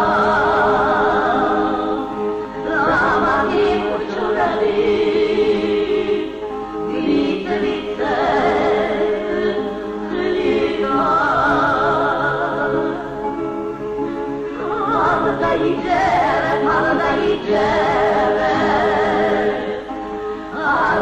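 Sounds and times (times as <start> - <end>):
steady musical accompaniment: 0.0 - 21.0
voices singing with vibrato: 0.0 - 21.0.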